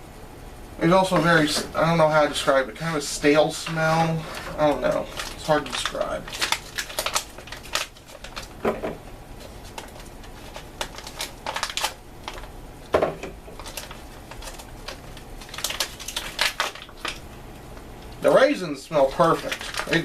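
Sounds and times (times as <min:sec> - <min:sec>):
plastic pouches crinkling: 0:01.0 - 0:12.6, 0:13.4 - 0:17.3, 0:18.2 - 0:20.0.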